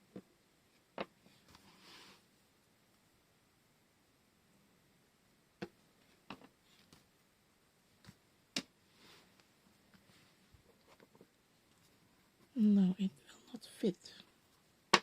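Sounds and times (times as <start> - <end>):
faint clicks and taps: 9.4 - 12.5.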